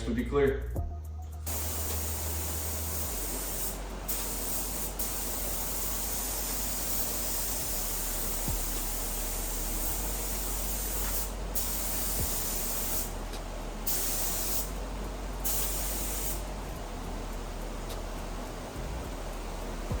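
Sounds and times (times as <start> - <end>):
paint spray gun hissing: 1.5 - 13.2, 13.8 - 14.8, 15.4 - 16.5.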